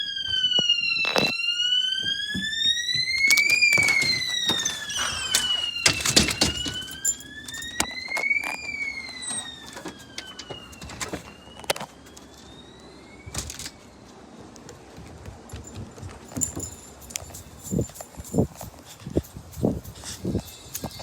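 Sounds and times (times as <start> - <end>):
fire alarm wailing: 0.0 - 14.1.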